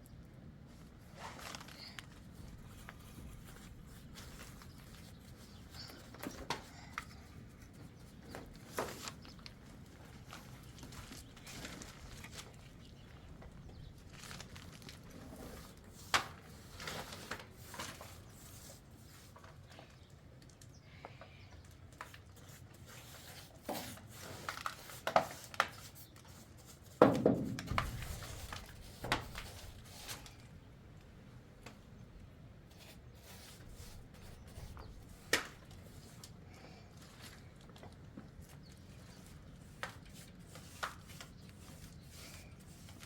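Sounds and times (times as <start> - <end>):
rustling: 0.7 - 20.1.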